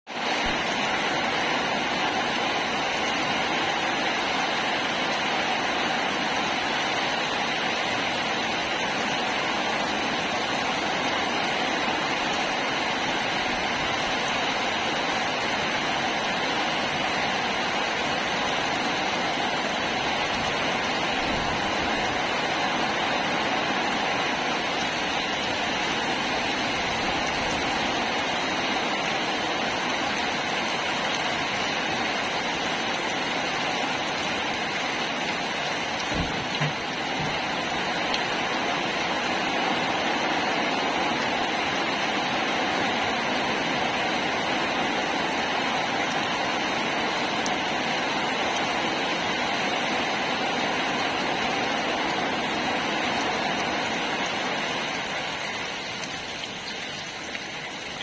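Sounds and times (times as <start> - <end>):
steady rain: 0.1 - 58.0.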